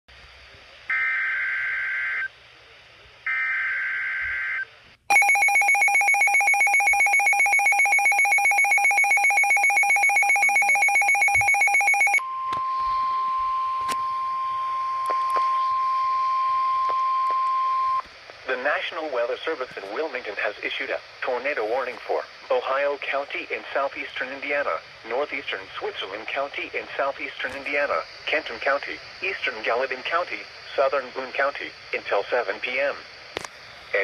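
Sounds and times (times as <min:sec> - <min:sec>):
steady high alarm tone: 0:03.3 - 0:18.0
pulsing multi-tone alert signal: 0:05.1 - 0:13.5.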